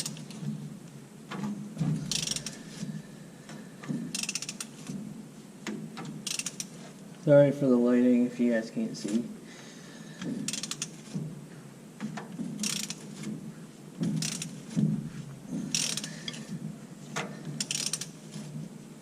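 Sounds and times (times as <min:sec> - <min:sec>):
ratchet wrench clicking: 0:02.0 - 0:02.8, 0:04.1 - 0:04.8, 0:06.2 - 0:06.7, 0:10.4 - 0:11.0, 0:12.6 - 0:13.1, 0:14.2 - 0:14.6, 0:15.7 - 0:16.4, 0:17.6 - 0:18.2.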